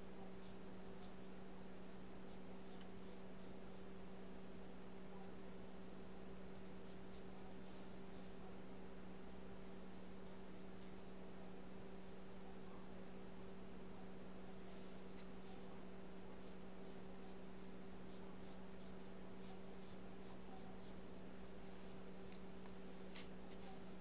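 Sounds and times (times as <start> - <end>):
brush strokes on paper: 5.5 - 8.6, 14.5 - 15.8, 16.4 - 22.1, 22.7 - 24.0.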